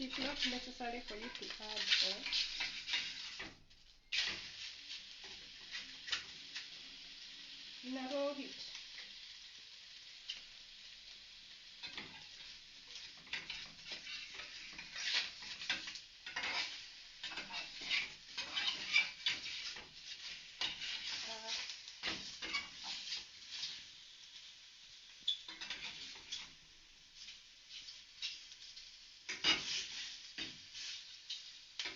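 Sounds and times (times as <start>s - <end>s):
utensil scraping a pan: 0.0s - 6.7s, 11.8s - 24.0s, 25.3s - 26.6s, 27.2s - 31.9s
bacon sizzling in a frying pan: 0.0s - 31.9s.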